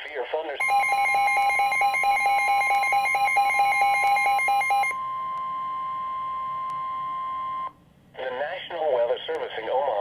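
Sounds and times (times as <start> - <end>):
rapid pulsing beep: 0.6 - 5.0
steady warning alarm tone: 0.6 - 7.7.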